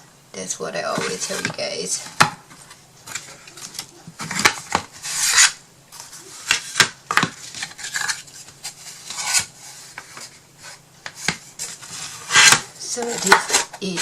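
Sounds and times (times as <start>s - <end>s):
wood scraping rubs: 7.4s - 14.0s.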